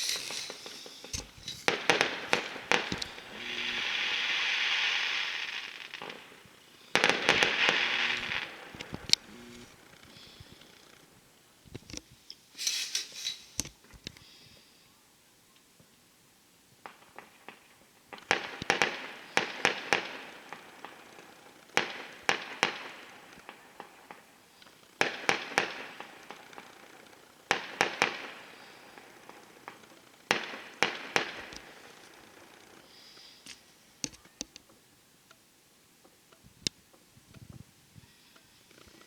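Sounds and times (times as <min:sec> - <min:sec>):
fireworks cracking with echo: 0:00.0 - 0:11.8, 0:16.8 - 0:34.6.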